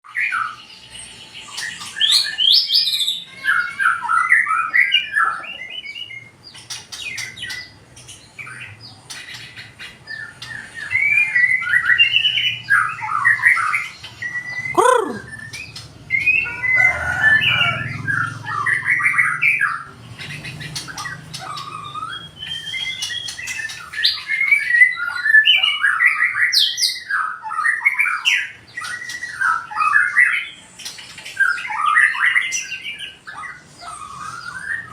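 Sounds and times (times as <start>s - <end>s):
bird singing whistles and chirps: 10.1s - 19.8s, 21.4s - 30.5s.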